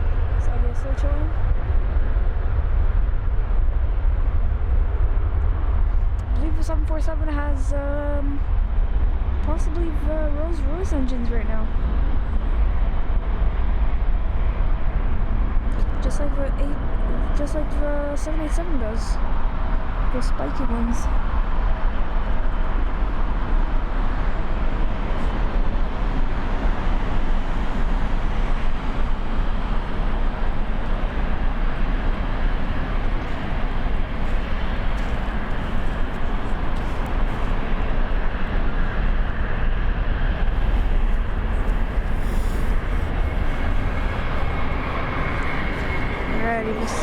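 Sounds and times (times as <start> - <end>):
jet engines running: 0.0 - 47.0.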